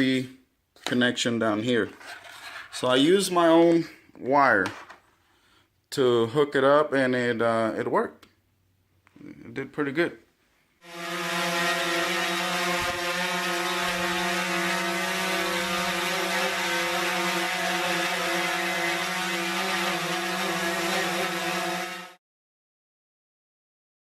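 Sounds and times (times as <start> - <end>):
drone propellers whirring: 10.8 - 22.2.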